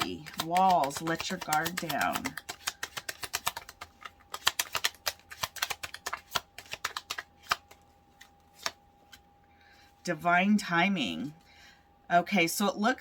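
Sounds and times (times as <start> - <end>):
cards being shuffled: 0.0 - 9.3.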